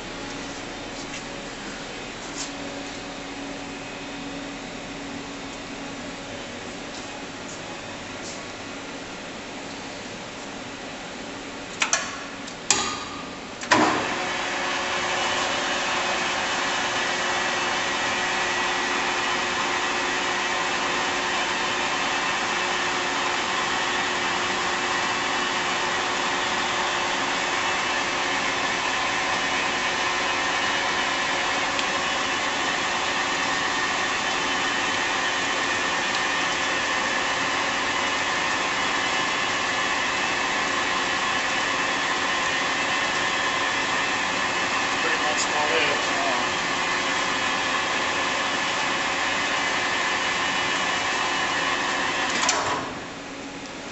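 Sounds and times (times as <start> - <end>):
lathe running with whine: 13.8 - 52.6.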